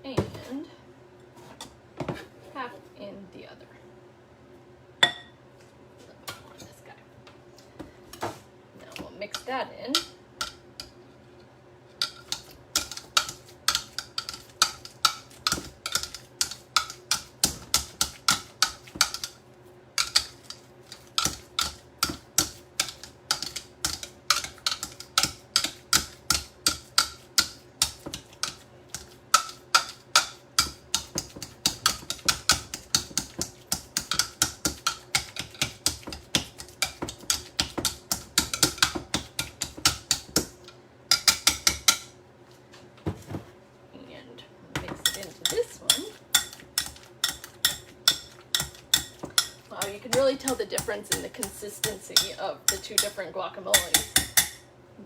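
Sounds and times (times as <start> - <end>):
utensil clicking against a bowl: 12.0 - 19.4, 20.0 - 42.1, 45.0 - 54.6.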